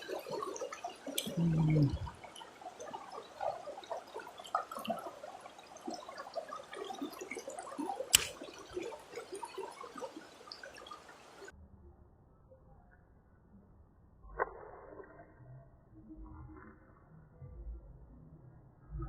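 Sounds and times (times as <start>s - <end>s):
sharp click: 8.1s - 8.4s.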